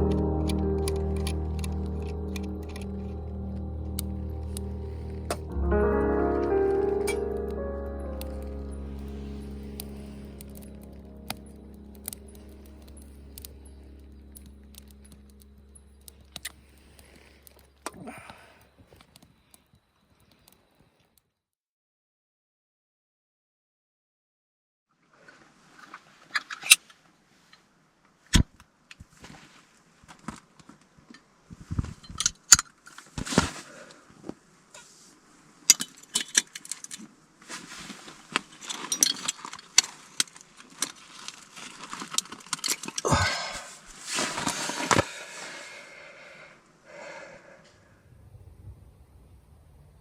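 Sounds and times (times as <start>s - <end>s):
rustling: 32.8s - 45.6s.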